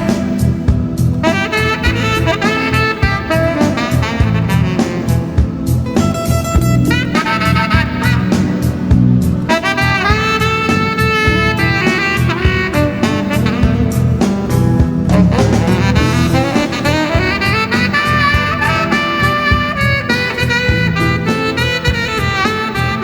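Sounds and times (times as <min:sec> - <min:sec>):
backing track with drums: 0:00.0 - 0:23.0
tenor saxophone melody: 0:00.0 - 0:23.0.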